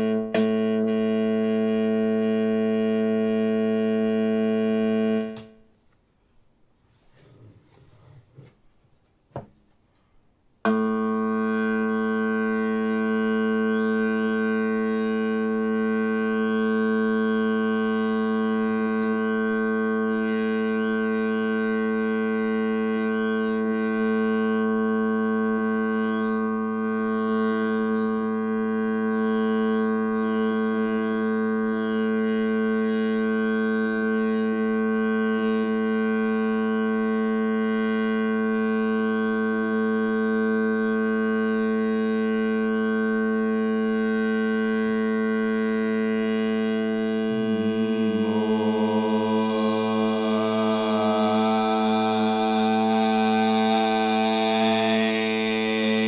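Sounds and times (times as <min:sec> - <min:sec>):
held electronic instrument note: 0:00.0 - 0:05.6, 0:10.7 - 0:56.0.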